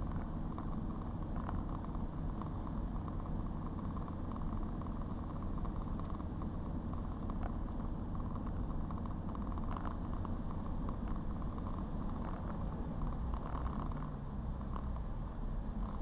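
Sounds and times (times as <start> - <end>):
car engine running: 0.0 - 16.0.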